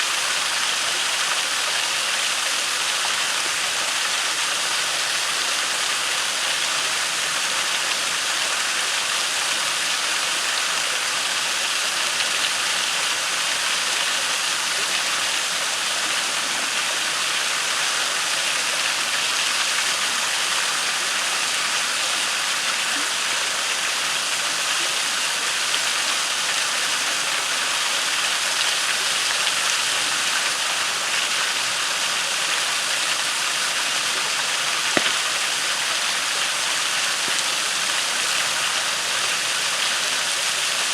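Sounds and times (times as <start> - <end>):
waterfall rushing: 0.0 - 40.9
campfire crackling pops: 34.9 - 35.4.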